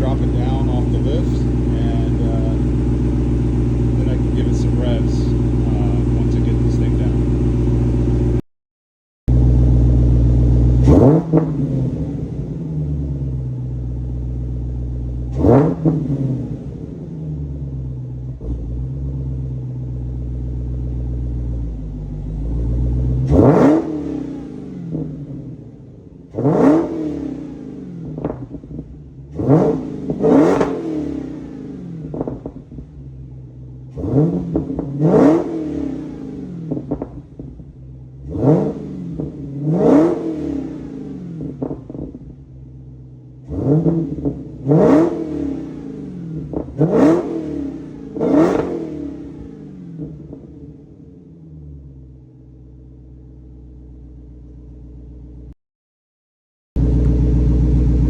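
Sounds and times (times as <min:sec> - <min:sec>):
car engine idling and revving: 0:00.0 - 0:08.4, 0:09.3 - 0:55.6, 0:56.8 - 0:58.0.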